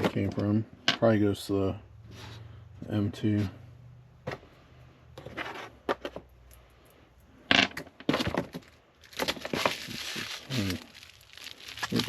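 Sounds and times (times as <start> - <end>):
parts clattering: 7.4 - 12.0.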